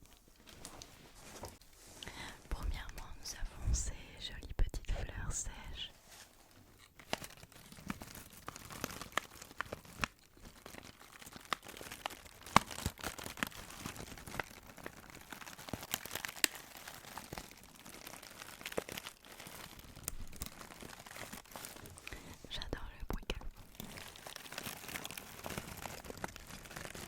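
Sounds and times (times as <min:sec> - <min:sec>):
packaging crinkling: 0:06.5 - 0:22.4, 0:23.3 - 0:27.0
packaging tearing: 0:06.9 - 0:22.4, 0:23.6 - 0:27.0.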